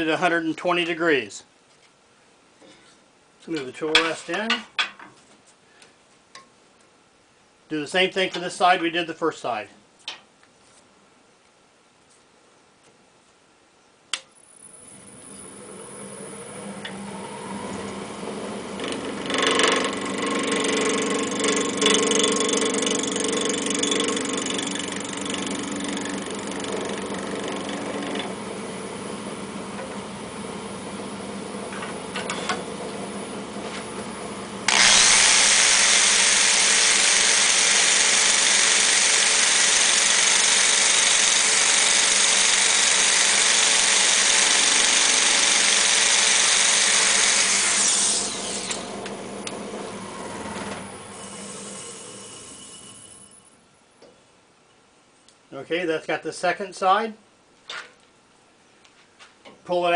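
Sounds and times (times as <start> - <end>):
lathe motor spinning up: 14.7 - 53.1
turning tool cutting wood: 15.3 - 28.5, 34.7 - 53.1.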